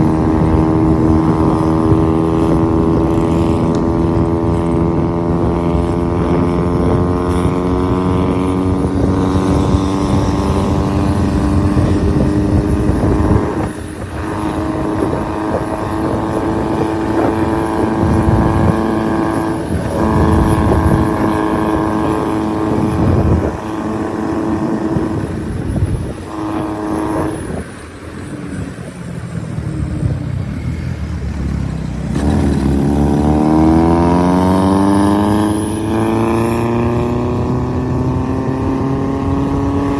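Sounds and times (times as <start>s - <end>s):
diesel engine under load: 0.0s - 39.9s.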